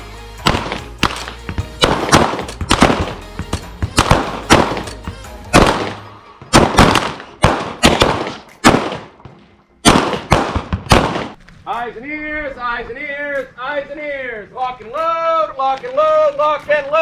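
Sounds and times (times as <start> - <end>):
handgun shots echoing: 0.5 - 9.2, 9.8 - 11.4.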